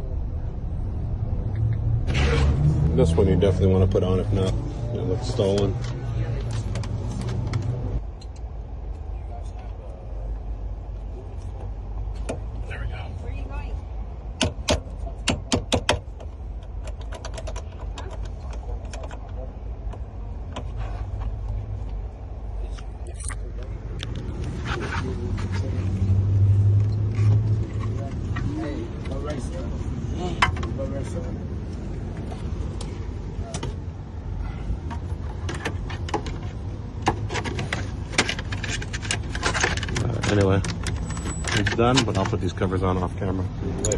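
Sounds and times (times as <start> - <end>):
steady low rumble: 0.0 - 15.2.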